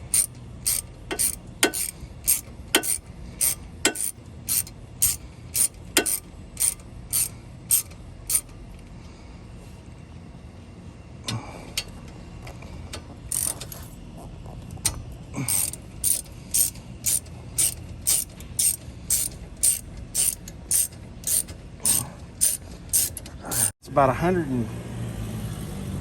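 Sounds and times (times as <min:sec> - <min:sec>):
ratchet wrench clicking: 0:00.0 - 0:08.6, 0:13.3 - 0:13.9, 0:15.5 - 0:23.7.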